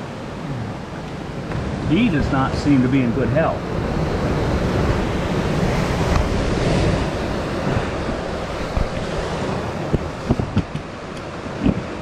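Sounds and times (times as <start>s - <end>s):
surf breaking on rocks: 0.0s - 12.0s
wind buffeting microphone: 0.0s - 12.0s
sharp knocks: 9.9s - 11.9s.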